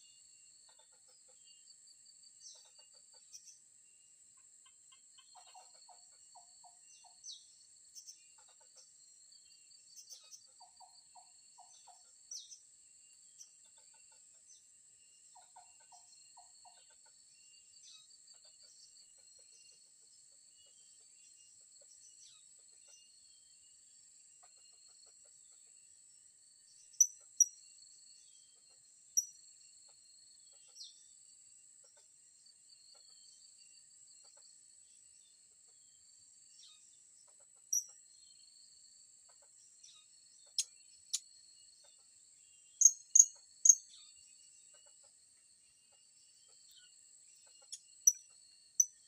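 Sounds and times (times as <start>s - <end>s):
pulsing cricket-like trill: 42.8s - 43.9s, 47.7s - 49.0s.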